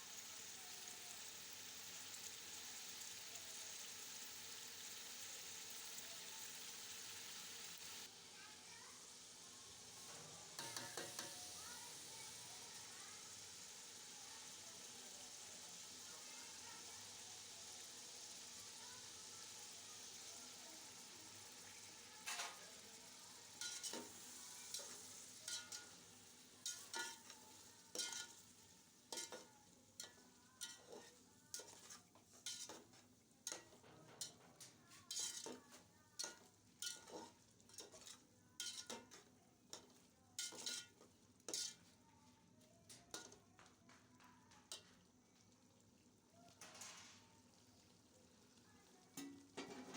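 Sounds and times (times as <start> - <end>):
food sizzling in a pot: 0.0 - 49.9
ladle knocking and scraping pot: 10.6 - 11.4, 33.5 - 35.6, 39.8 - 41.8, 49.2 - 49.9.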